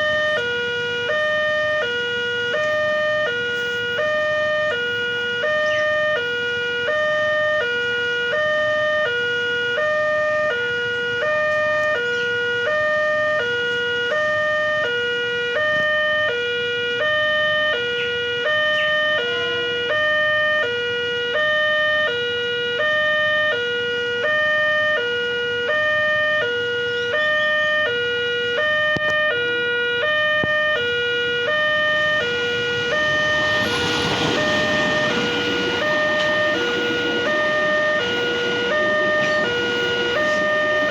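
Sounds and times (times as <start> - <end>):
level-crossing warning siren: 0.0 - 40.9
rushing noise: 30.2 - 40.9.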